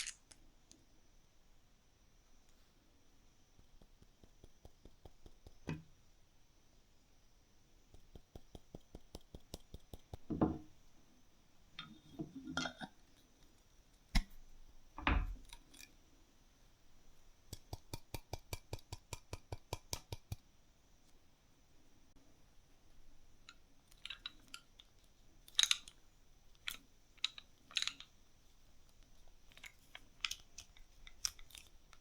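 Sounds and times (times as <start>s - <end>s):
clicks and clinks of objects: 0.0s - 0.4s, 26.6s - 28.1s
regular clicks: 23.4s - 28.2s.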